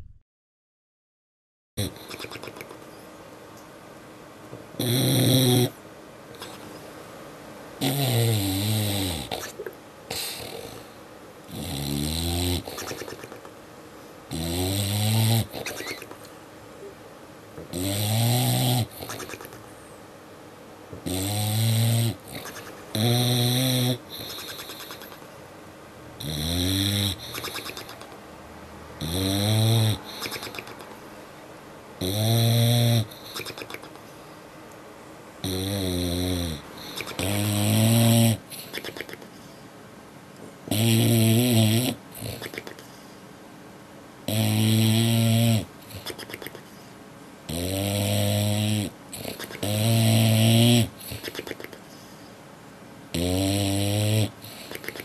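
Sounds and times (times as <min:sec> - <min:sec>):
dog snoring: 0:01.8 - 0:02.8, 0:04.8 - 0:06.6, 0:07.8 - 0:13.5, 0:14.3 - 0:16.2, 0:17.6 - 0:19.6, 0:21.0 - 0:25.3, 0:26.2 - 0:28.1, 0:29.0 - 0:30.9, 0:32.0 - 0:33.9, 0:35.4 - 0:39.3, 0:40.7 - 0:42.8, 0:44.2 - 0:46.6, 0:47.5 - 0:51.8, 0:53.1 - 0:55.0.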